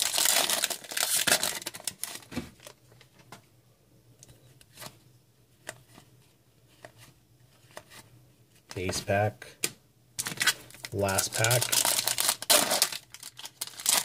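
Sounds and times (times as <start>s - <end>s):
plastic wrapper tearing and crinkling: 0.0s - 2.8s, 10.2s - 14.0s.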